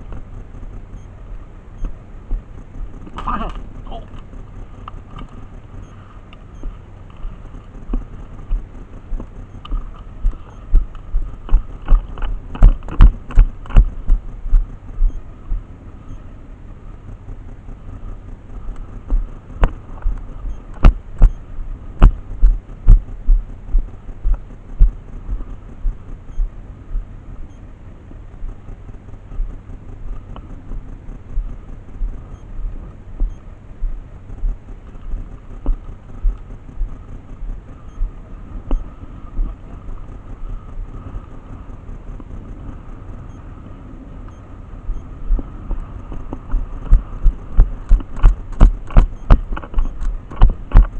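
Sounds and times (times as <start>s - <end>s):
sharp clicks: 9.2s - 16.2s, 18.7s - 21.4s, 44.2s - 50.9s.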